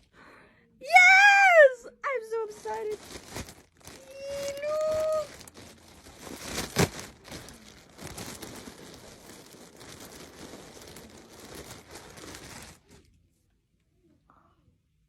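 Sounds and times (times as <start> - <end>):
packaging crinkling and rustling: 2.3 - 13.1.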